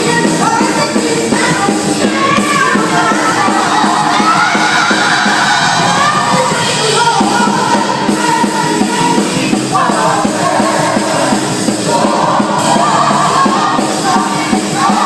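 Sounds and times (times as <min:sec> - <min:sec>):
band playing steady beat: 0:00.0 - 0:15.0
lead singer singing: 0:00.0 - 0:15.0
people shouting: 0:02.2 - 0:07.0.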